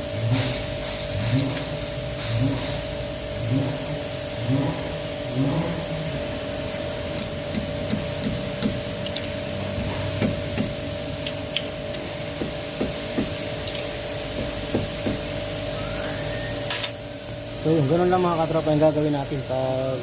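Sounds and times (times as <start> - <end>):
steady background hum and hiss: 0.0 - 20.0
metal parts knocking and clicking: 7.1 - 9.4, 13.6 - 13.9.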